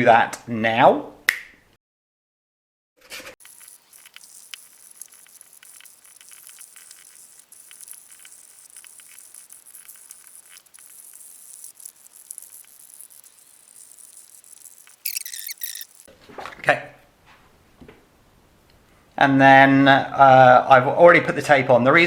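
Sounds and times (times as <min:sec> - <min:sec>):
sandpaper scratching rubber tire: 0:03.4 - 0:16.1.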